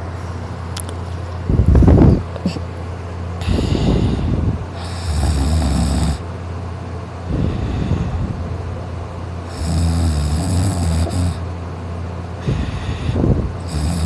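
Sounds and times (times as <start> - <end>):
soft breathing: 3.4 - 5.1, 7.3 - 8.4, 12.4 - 13.4
person snoring loudly: 3.4 - 6.2, 9.4 - 11.4, 12.4 - 14.0.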